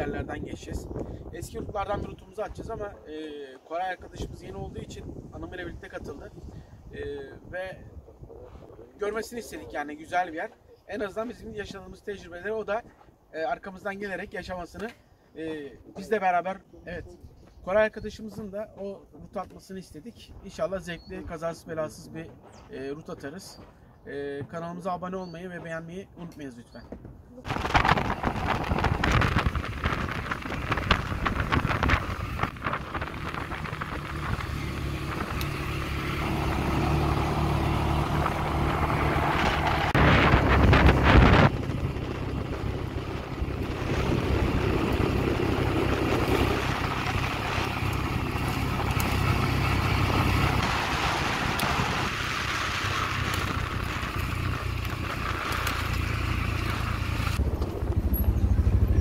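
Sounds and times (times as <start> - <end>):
wind on microphone: 0.0 - 3.1, 4.0 - 9.7, 27.1 - 59.0
loud rushing sound: 27.5 - 54.5
atv engine hum: 27.5 - 59.0.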